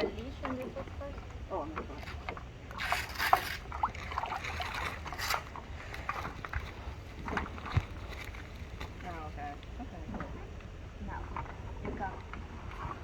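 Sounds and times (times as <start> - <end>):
water splashing around paddleboards: 0.0 - 10.4.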